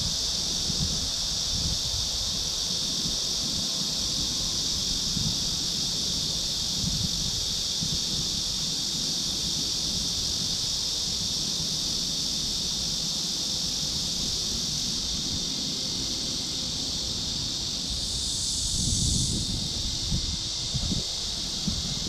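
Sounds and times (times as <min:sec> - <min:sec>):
steady high-pitched hiss: 0:00.0 - 0:22.0
wind buffeting microphone: 0:17.6 - 0:22.0.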